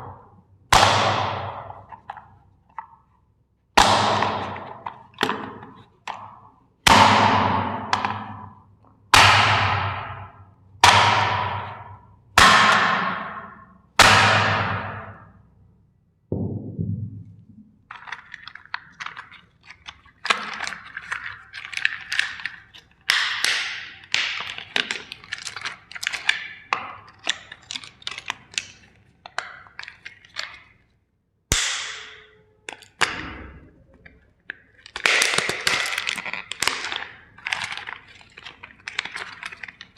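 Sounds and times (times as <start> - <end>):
plastic cracking and snapping: 17.9 - 30.8, 33.9 - 39.9.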